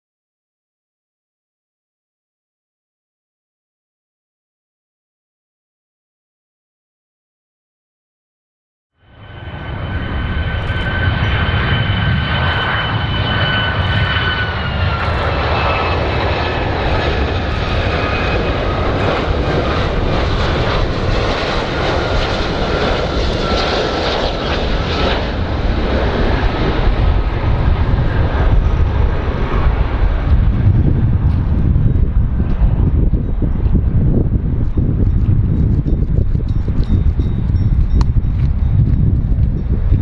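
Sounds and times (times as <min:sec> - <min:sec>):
airplane engines rumbling and whining: 0:09.0 - 0:40.0.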